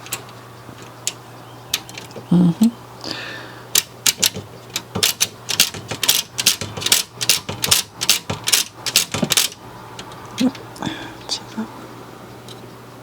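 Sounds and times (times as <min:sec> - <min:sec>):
small metal parts clicking: 0:00.0 - 0:02.3, 0:03.7 - 0:10.6.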